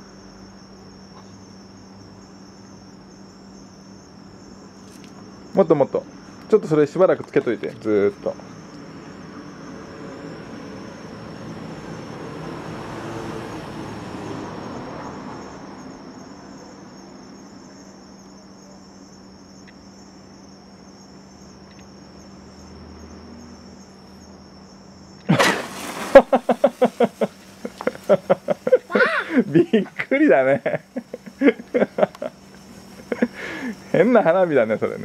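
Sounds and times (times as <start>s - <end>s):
crickets chirping: 0.0s - 35.0s
hand-held firework hissing: 25.3s - 29.4s.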